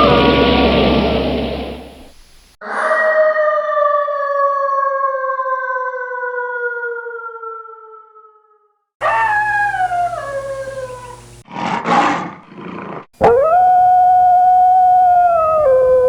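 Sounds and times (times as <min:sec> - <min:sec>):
wolves howling: 0:09.0 - 0:11.4, 0:13.2 - 0:16.0.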